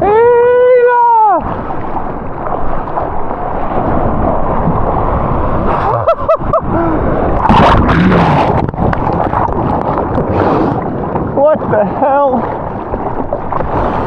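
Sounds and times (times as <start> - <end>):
bubbling gurgles: 6.8 - 14.0
breaking water splash: 7.3 - 14.0.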